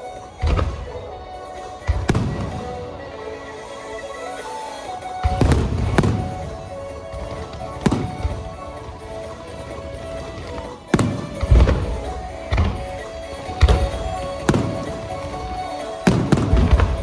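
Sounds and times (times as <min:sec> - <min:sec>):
music: 0:00.0 - 0:17.0
firework shells booming: 0:01.8 - 0:03.3, 0:05.2 - 0:17.0.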